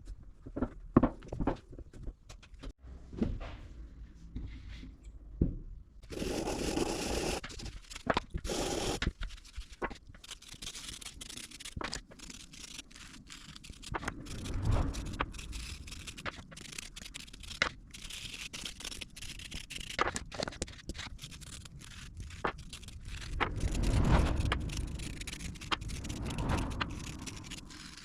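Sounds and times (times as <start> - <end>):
scraping and rubbing: 6.0 - 28.0.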